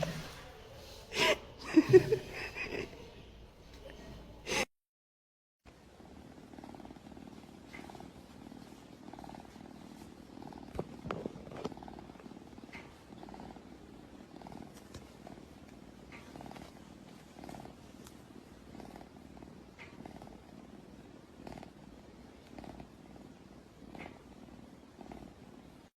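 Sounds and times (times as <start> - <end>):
cat purring: 5.7 - 25.9.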